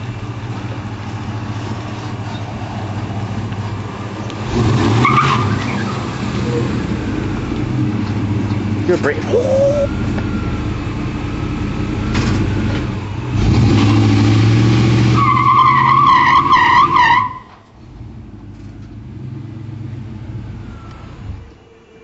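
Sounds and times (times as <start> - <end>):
car engine running: 0.0 - 15.2
loud wavering tyre squeal: 3.7 - 7.4, 9.2 - 17.6, 20.1 - 22.0.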